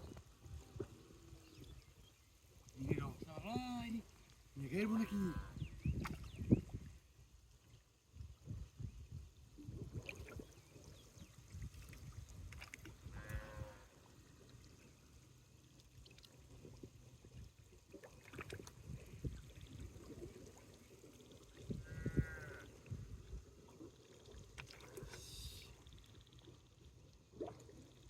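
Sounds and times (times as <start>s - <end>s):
faint goat or sheep bleating: 13.1s - 13.8s, 21.8s - 22.7s.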